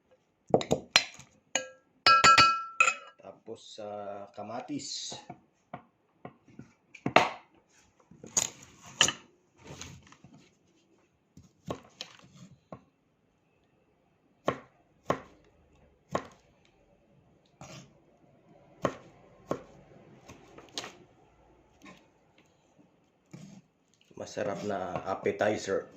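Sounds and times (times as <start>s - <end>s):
knife chopping on cutting board: 14.4s - 15.4s, 16.1s - 16.4s, 18.8s - 21.0s.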